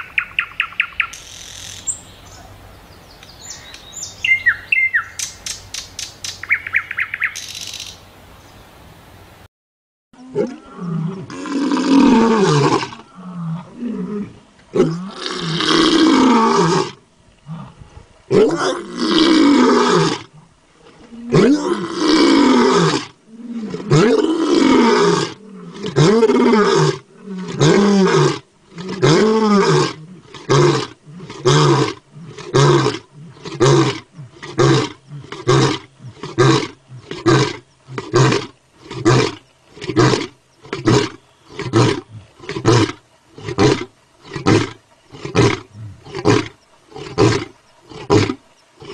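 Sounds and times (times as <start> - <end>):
lion roaring: 10.2 - 48.9.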